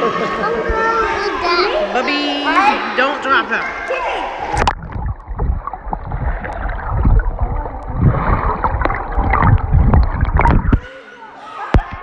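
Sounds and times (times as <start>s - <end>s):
pool water sloshing and gurgling: 0.0s - 11.0s
small splashes: 3.9s - 10.9s.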